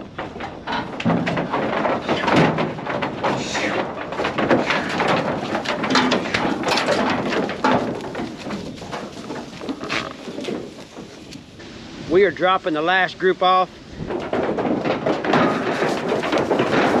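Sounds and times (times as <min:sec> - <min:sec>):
pen gates knocking and clattering: 0:00.0 - 0:09.8, 0:14.1 - 0:17.0
goats calling: 0:04.5 - 0:11.6.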